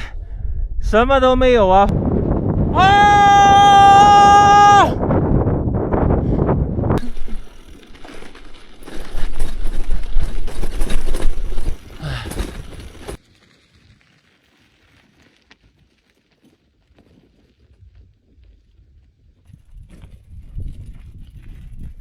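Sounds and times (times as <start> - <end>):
wind buffeting microphone: 0.0 - 13.2, 17.8 - 22.0.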